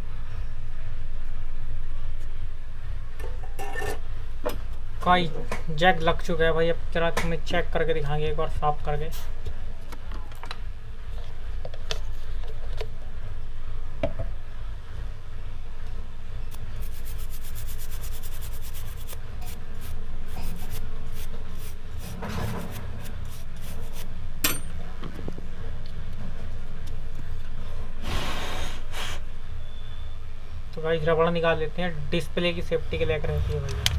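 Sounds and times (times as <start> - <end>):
steady low hum: 0.0 - 33.9
brushing circuit board: 16.6 - 24.1.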